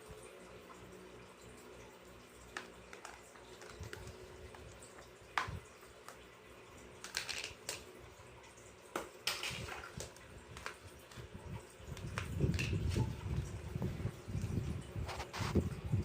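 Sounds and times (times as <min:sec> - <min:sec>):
water splashing: 0:02.4 - 0:15.6
plastic toy dishes clinking: 0:07.0 - 0:07.8.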